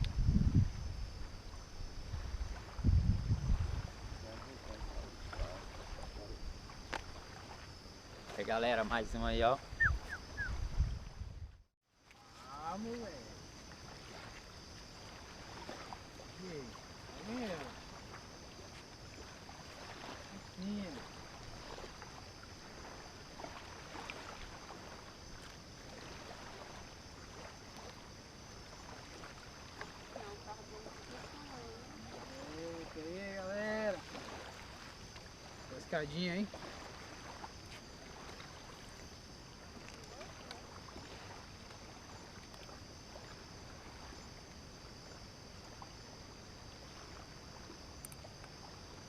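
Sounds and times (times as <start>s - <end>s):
constant high hiss: 0.0s - 49.0s
surf washing on beach: 12.3s - 42.1s
faint ticks: 47.9s - 48.6s.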